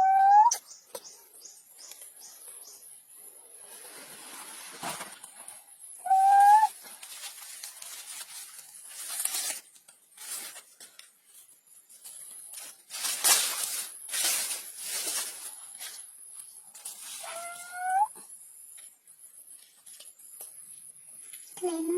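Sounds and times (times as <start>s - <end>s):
baby monkey crying: 0.0s - 0.6s, 6.1s - 6.7s, 17.2s - 18.1s
scratchy rustling: 12.4s - 16.0s.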